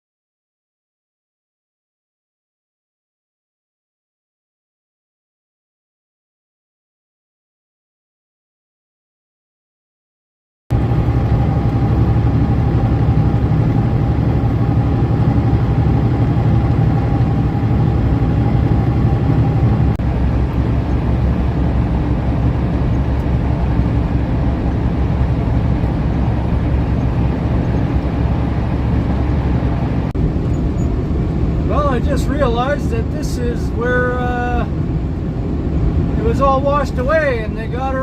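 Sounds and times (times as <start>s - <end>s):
truck engine and road noise: 10.7s - 38.0s.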